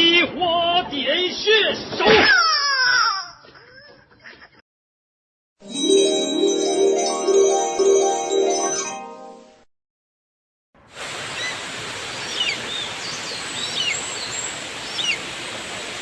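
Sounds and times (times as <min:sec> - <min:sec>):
chime-like melody: 0:05.6 - 0:09.7
birds whistling: 0:12.3 - 0:15.2.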